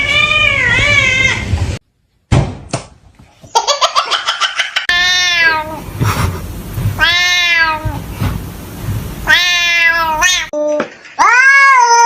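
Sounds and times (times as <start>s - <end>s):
cat meowing: 0.0s - 1.5s, 4.9s - 5.8s, 11.2s - 12.0s.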